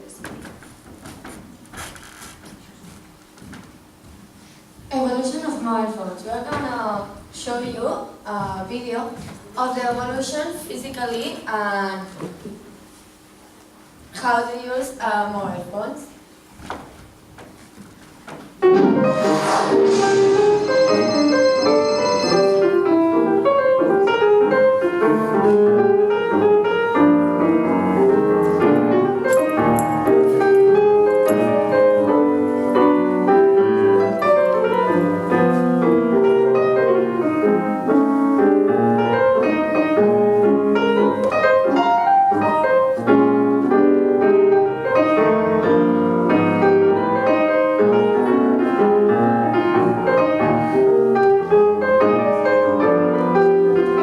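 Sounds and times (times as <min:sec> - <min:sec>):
piano music with quick notes: 0:18.4 - 0:54.0.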